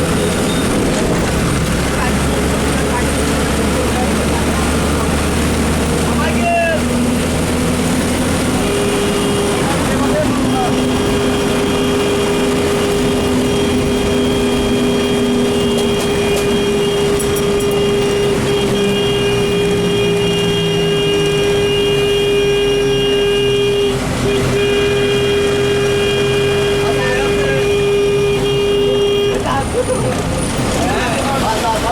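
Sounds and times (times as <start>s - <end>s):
bus engine running: 0.0s - 31.9s
rain and road noise: 0.0s - 31.9s.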